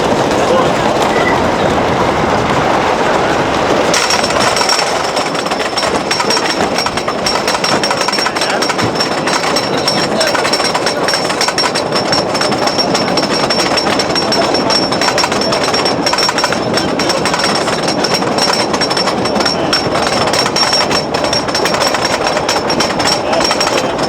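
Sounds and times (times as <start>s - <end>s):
roller coaster clattering on track: 0.0s - 24.0s.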